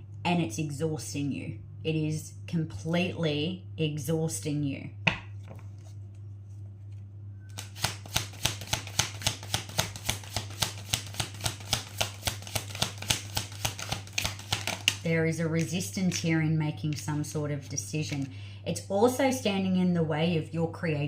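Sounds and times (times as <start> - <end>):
cards being shuffled: 5.3 - 15.0.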